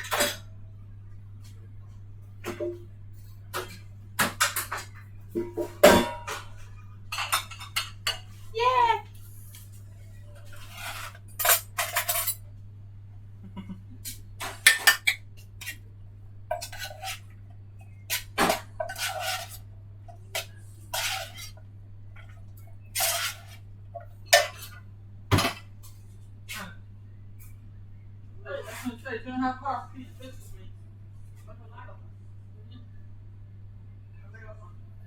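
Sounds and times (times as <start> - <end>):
dishes and cutlery clinking: 0.0 - 0.5, 2.4 - 8.5, 10.4 - 12.5, 14.0 - 15.8, 16.5 - 26.0.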